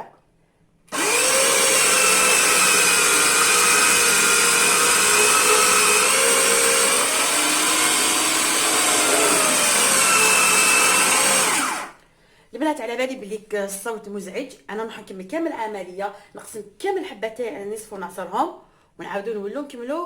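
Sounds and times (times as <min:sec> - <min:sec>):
juicer motor whine: 0:00.9 - 0:12.0.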